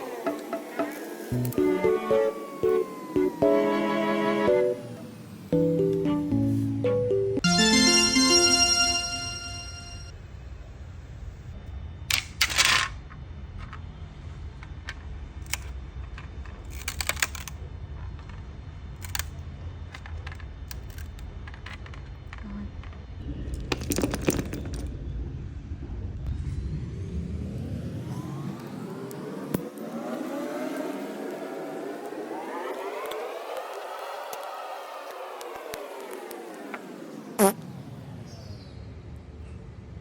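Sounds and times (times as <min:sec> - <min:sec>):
printer humming: 0:00.0 - 0:06.3
stepper motors whining: 0:00.0 - 0:06.6, 0:27.2 - 0:38.2.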